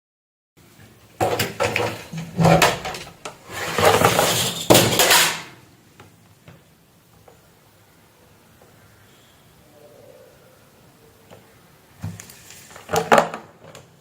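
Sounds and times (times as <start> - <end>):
scraping and rustling: 1.2 - 5.6.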